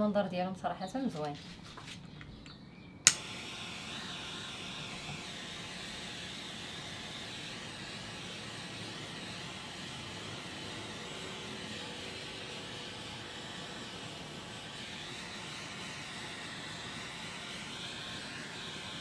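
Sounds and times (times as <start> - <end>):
blowtorch clicking alight: 1.2 - 19.0
blowtorch flame hissing: 3.0 - 19.0.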